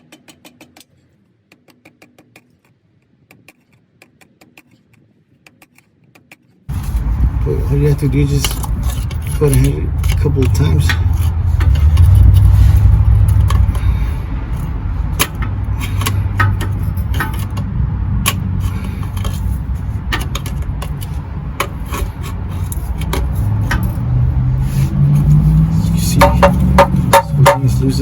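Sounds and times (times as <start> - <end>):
steady low rumble: 6.7 - 28.0.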